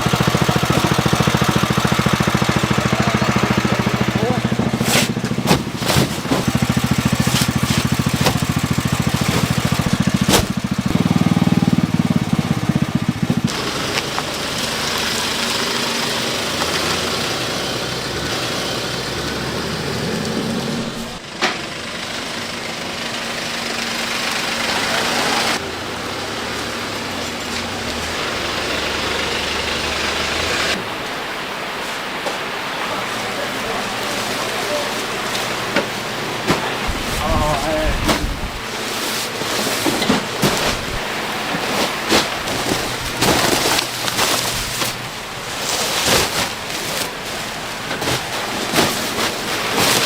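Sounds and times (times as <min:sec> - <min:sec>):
engine running: 0:00.0 - 0:50.0
faint mechanical hum: 0:20.2 - 0:50.0.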